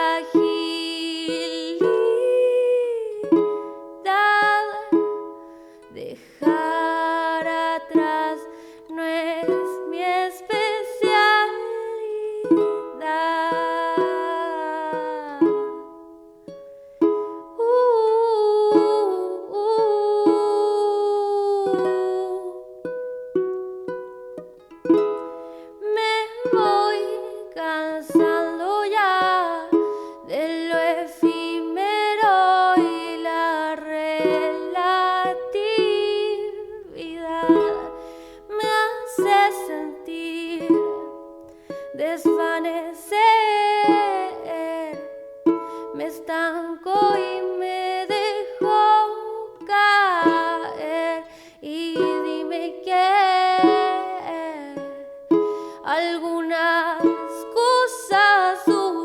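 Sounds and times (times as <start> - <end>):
wavering melodic lead: 21.4 - 59.0
plucked notes and chords: 21.5 - 59.0.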